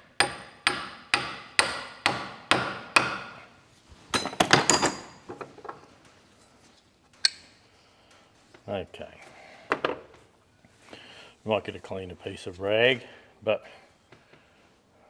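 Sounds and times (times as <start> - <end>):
hammer striking metal punch: 0.0 - 3.4.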